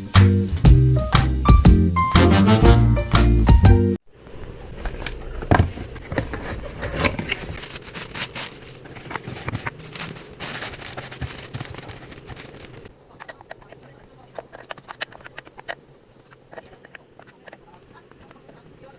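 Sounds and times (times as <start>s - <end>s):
close-up rustling and scraping: 4.2s - 18.9s
small clicks and ticks: 11.6s - 18.9s.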